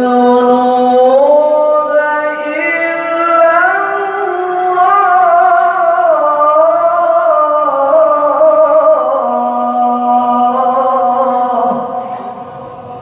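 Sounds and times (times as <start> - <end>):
man chanting melodically: 0.0 - 13.0.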